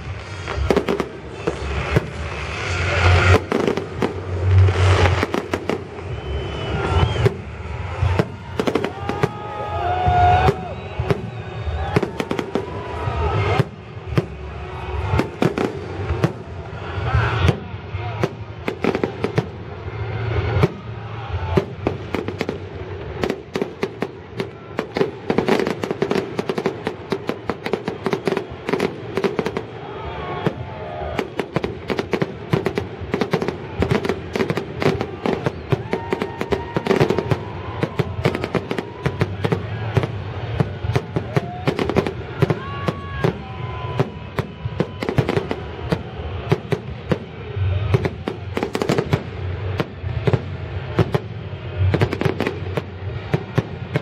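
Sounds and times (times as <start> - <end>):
fireworks bangs and crackles: 0.0 - 54.0.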